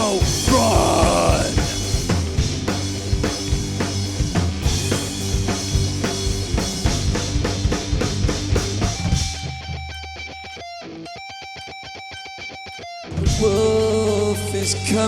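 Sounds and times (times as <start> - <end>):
rock band playing: 0.0 - 15.0
guitar picking repeated notes: 9.4 - 13.1.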